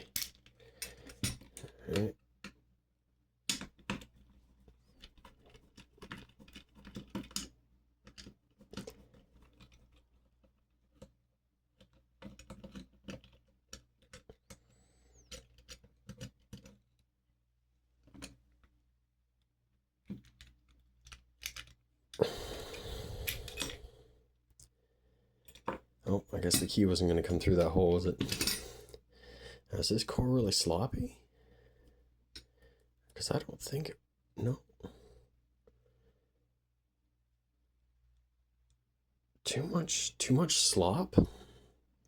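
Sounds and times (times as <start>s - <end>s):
metal parts clicking and tapping: 5.0s - 10.0s, 20.1s - 21.8s.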